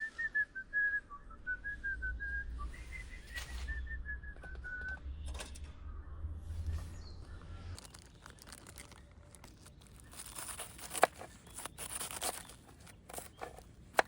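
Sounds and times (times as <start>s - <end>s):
short whistled notes: 0.0s - 5.2s
low rumble: 1.0s - 9.5s.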